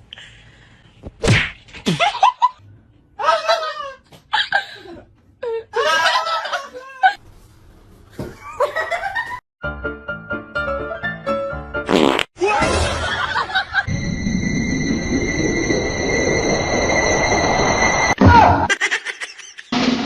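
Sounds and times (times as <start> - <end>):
music: 9.6 - 12.0.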